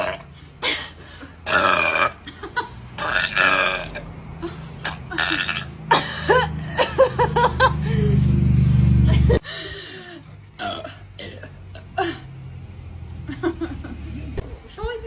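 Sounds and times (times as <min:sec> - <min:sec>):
woman belching: 0:00.0 - 0:00.3, 0:01.4 - 0:02.4, 0:03.0 - 0:04.1, 0:04.8 - 0:06.9, 0:10.6 - 0:12.0.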